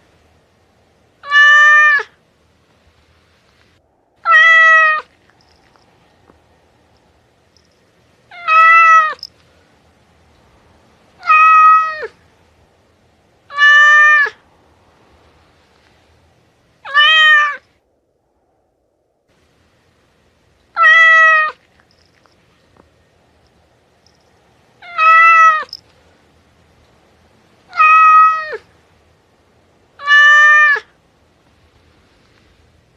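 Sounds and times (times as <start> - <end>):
cat meowing: 1.2 - 2.2, 4.2 - 5.2, 8.3 - 9.3, 11.2 - 12.2, 13.5 - 14.4, 16.8 - 17.6, 20.7 - 21.6, 24.8 - 25.8, 27.7 - 28.7, 30.0 - 30.9.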